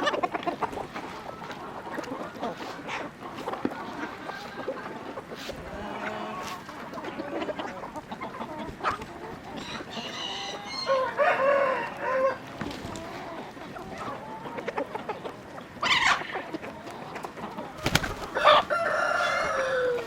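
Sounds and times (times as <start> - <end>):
chickens clucking: 0.0 - 20.0
rooster crowing: 9.7 - 12.4, 18.2 - 20.0.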